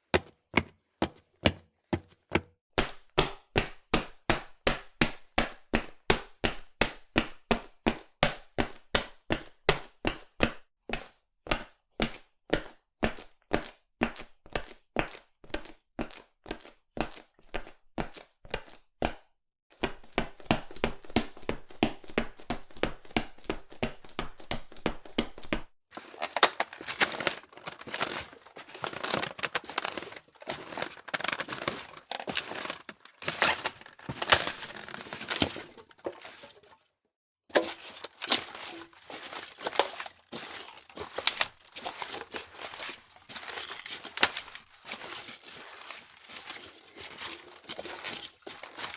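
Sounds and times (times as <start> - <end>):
firm footsteps: 25.9 - 36.8, 37.5 - 48.9
crunchy footsteps on loose surface: 25.9 - 36.9, 37.5 - 48.9.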